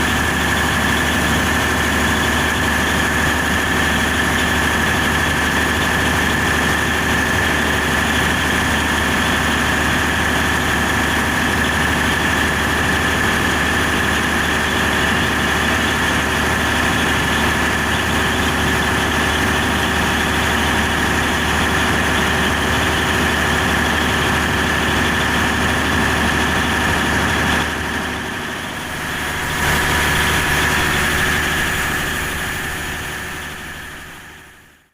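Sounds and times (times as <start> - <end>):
diesel generator engine hum: 0.0 - 34.9
high steady whine: 27.0 - 34.9.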